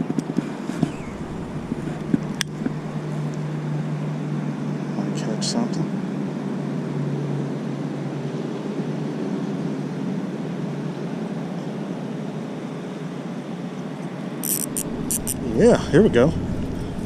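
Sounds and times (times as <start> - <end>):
distant engine rumble: 0.6 - 7.6, 14.6 - 17.0
low hum: 0.7 - 5.2, 14.4 - 17.0.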